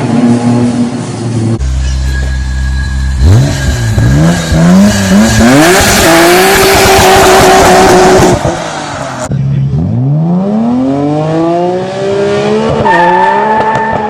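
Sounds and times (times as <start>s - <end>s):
car engine accelerating hard: 3.2s - 14.0s.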